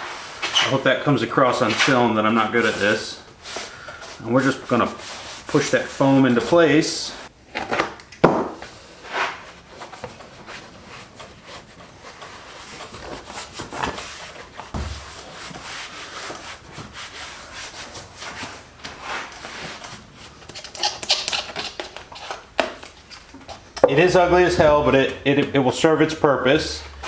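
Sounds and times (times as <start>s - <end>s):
hands rubbing foam: 1.4s - 6.5s, 11.5s - 20.4s.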